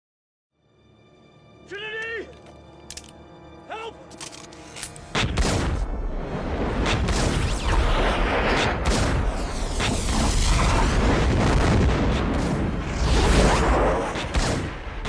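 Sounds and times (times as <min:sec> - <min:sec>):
explosion booms: 0:05.2 - 0:15.0.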